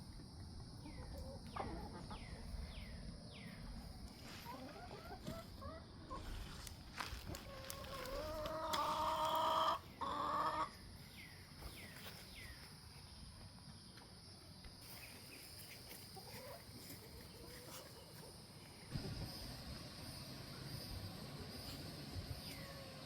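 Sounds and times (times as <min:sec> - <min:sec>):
chicken calling loudly: 0:07.3 - 0:10.7.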